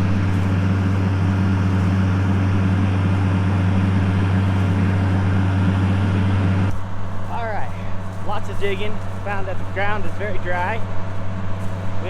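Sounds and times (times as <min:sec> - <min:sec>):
tractor engine running: 0:00.0 - 0:12.0.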